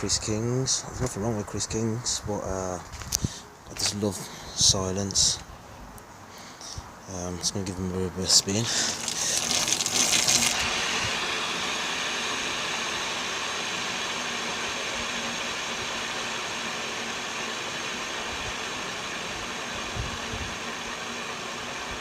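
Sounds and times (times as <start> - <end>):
bicycle wheel spinning whirr: 8.6 - 22.0.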